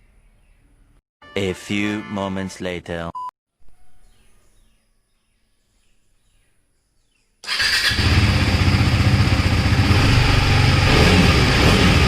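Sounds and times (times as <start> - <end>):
motorcycle engine running: 7.5 - 12.0.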